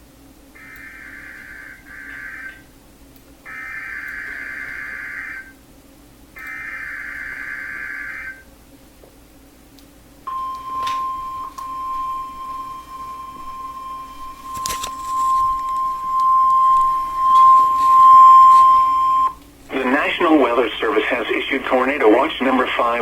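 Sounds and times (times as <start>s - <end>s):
warbling data squawk: 10.3s - 21.9s
steady alarm tone: 10.3s - 23.0s.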